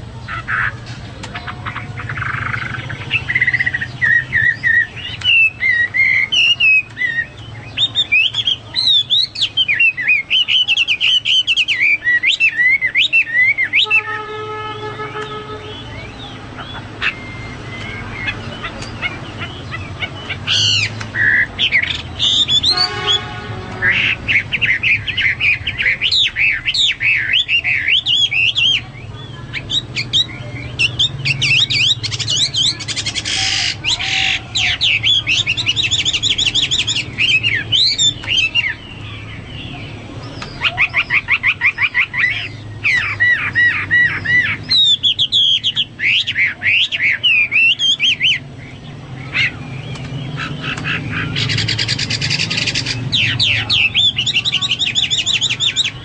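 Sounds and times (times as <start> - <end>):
bird singing whistled phrases: 2.1 - 14.2, 15.2 - 23.2.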